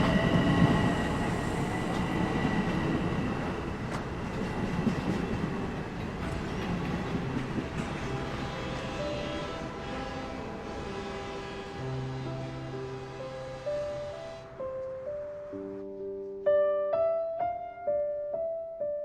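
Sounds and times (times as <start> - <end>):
train rumbling on rails: 0.0 - 14.6.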